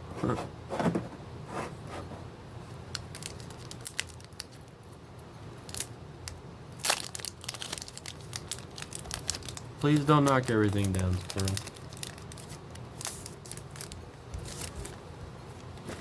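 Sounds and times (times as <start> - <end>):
foil wrapper rustling: 2.9 - 5.0, 5.6 - 15.0.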